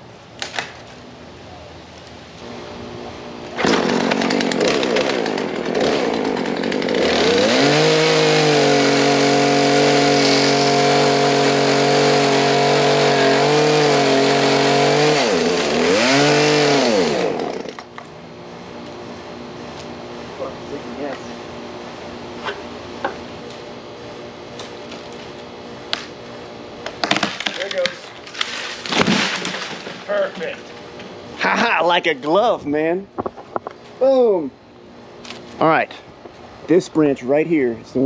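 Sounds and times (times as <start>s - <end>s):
chainsaw revving: 3.6s - 17.8s.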